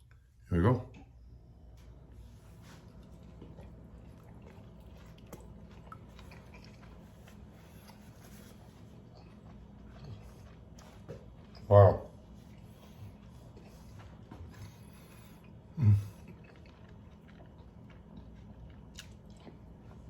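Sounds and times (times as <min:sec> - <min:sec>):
low steady hum: 0:00.0 - 0:20.0
faint chewing: 0:00.9 - 0:20.0.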